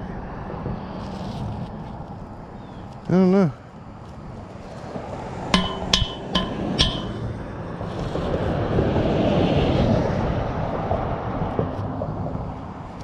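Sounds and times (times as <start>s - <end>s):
passing traffic rushing: 4.3s - 13.0s
metal clinking on metal: 5.6s - 7.3s.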